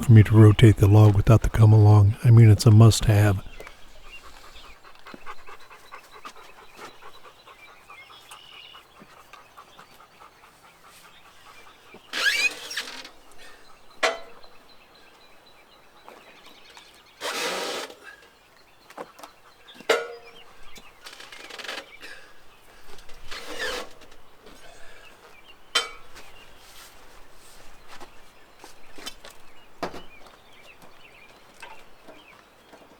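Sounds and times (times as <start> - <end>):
short rasp: 12.2 - 13.0, 17.2 - 18.1.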